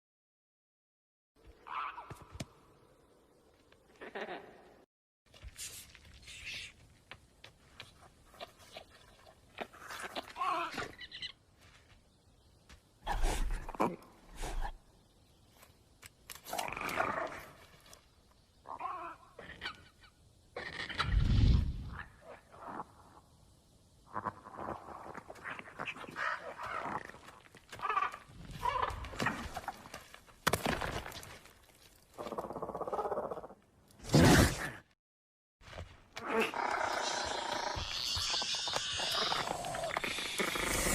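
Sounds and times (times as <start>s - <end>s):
creature call with rattle: 36.4s - 40.9s.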